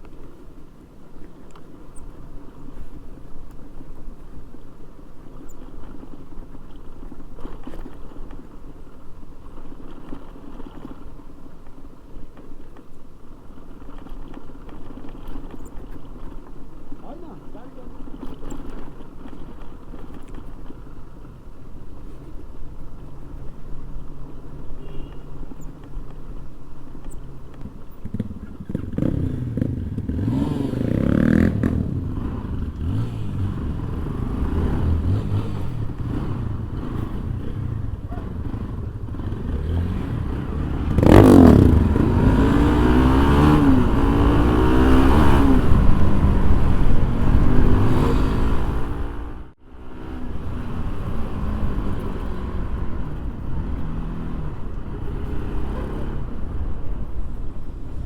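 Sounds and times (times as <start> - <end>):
motorcycle engine revving: 27.0 - 58.0.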